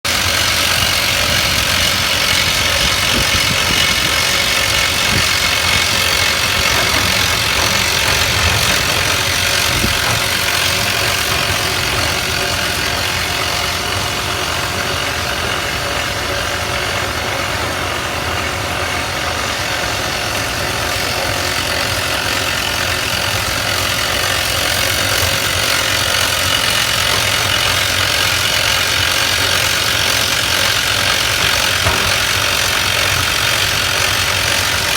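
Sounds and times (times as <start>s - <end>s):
drilling machine engine: 0.0s - 34.9s
drilling machine hammering: 0.0s - 34.9s.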